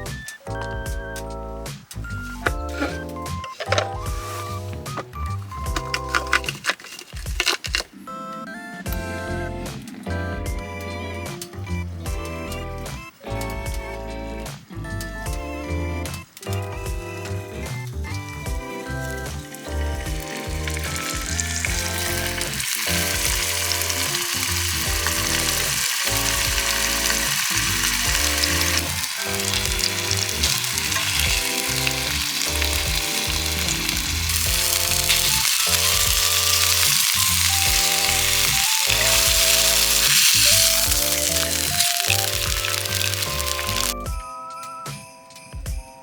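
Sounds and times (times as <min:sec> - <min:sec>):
background music with a beat: 0:00.0 - 0:06.8, 0:07.7 - 0:46.0
food sizzling in hot oil: 0:02.6 - 0:07.9, 0:17.6 - 0:44.0.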